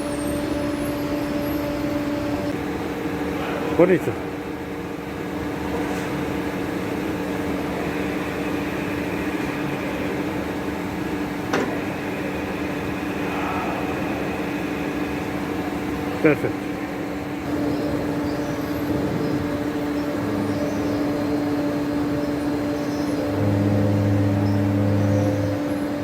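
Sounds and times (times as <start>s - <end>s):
grinder humming: 17.5s - 26.0s
higher steady tone: 17.5s - 26.0s.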